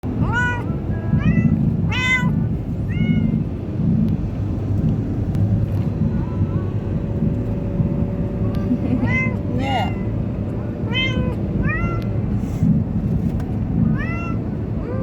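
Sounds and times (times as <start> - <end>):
steady low rumble: 0.0 - 15.0
cat meowing: 0.2 - 3.4, 9.0 - 10.0, 10.8 - 12.1, 13.8 - 15.0.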